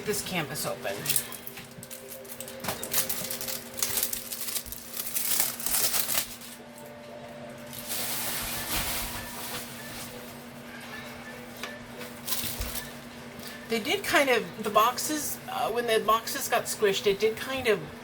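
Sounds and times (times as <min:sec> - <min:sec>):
plastic packaging crinkling: 0:00.8 - 0:06.9, 0:07.6 - 0:10.6.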